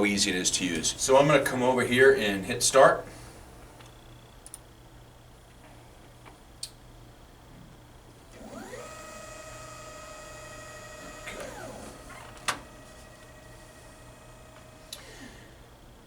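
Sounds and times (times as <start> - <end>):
stepper motor whine: 8.3 - 15.5.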